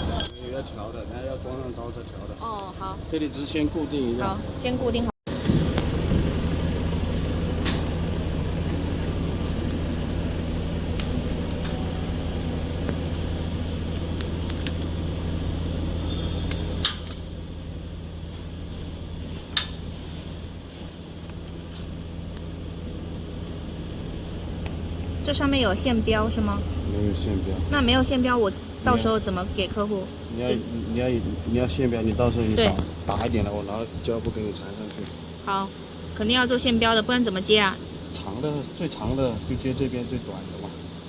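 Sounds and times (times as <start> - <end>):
metallic clinks: 0.0 - 0.9
machinery hum: 0.0 - 41.0.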